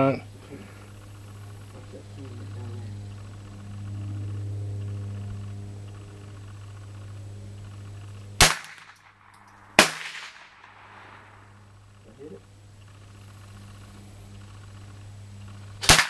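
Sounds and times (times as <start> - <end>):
rifle shots cracking: 8.4 - 11.7, 15.8 - 16.0.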